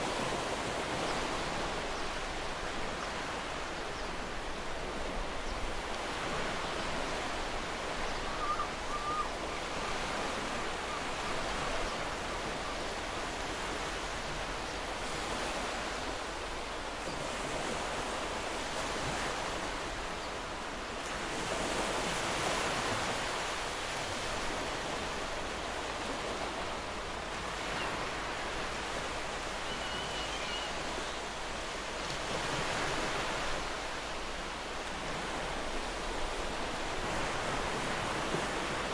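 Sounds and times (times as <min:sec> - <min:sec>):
ocean waves washing ashore: 0:00.0 - 0:38.9
faint bird calls: 0:08.0 - 0:09.8, 0:29.5 - 0:31.3.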